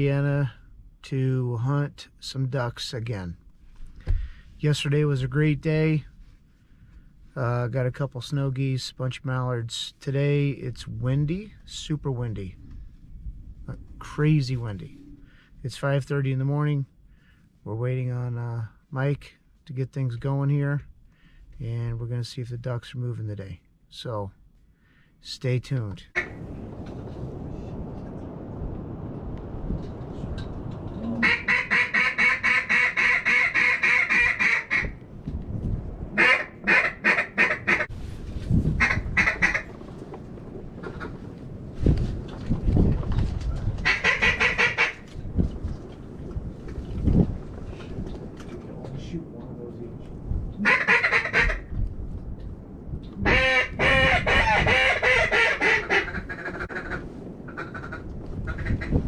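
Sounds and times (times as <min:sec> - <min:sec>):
wind rumble: 0:00.0 - 0:01.2, 0:02.0 - 0:59.0
duck quacking: 0:31.2 - 0:34.9, 0:36.2 - 0:37.9, 0:50.6 - 0:51.6, 0:53.2 - 0:57.0.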